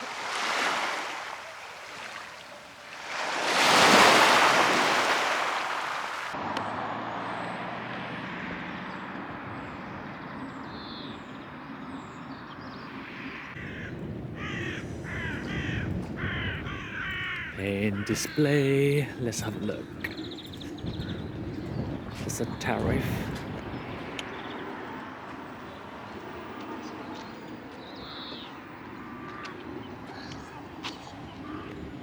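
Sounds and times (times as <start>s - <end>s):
sea waves washing onto shore: 0.0s - 6.4s
outdoor background noise: 0.0s - 32.0s
harsh bird caws: 12.8s - 18.4s, 27.9s - 31.9s.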